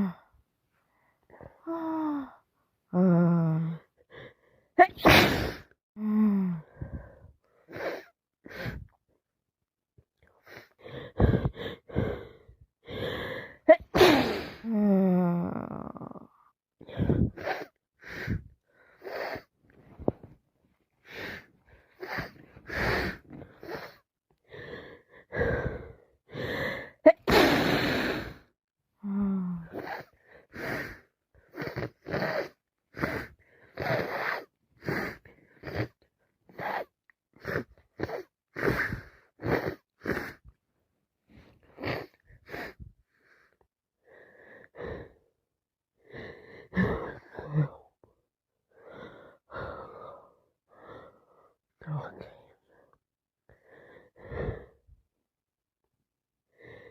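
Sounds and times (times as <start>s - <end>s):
woman sneezing: 4.8s - 5.6s, 13.7s - 14.6s.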